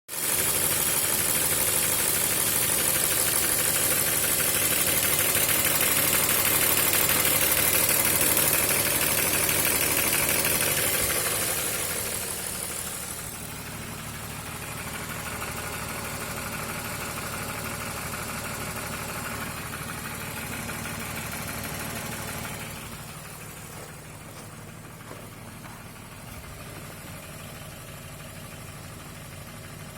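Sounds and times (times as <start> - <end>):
engine idling with knocking: 0.1 - 29.9.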